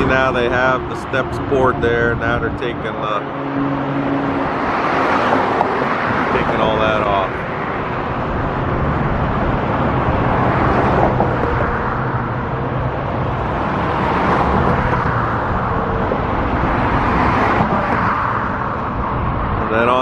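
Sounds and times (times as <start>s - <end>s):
road traffic rumble: 0.0s - 20.0s.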